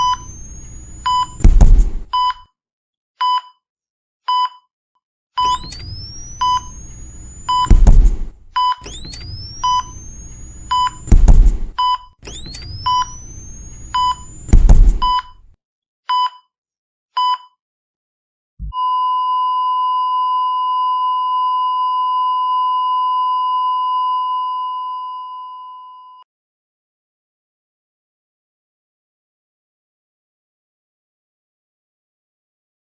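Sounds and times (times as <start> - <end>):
flatline tone: 0.0 - 2.3, 5.4 - 15.4
defibrillator charging whine: 0.0 - 2.4, 5.4 - 15.4
heart monitor beeping: 0.0 - 2.4, 3.2 - 3.6, 4.3 - 4.7, 5.4 - 15.4, 16.1 - 16.5
defibrillator shock thump: 1.1 - 2.3, 5.4 - 15.4.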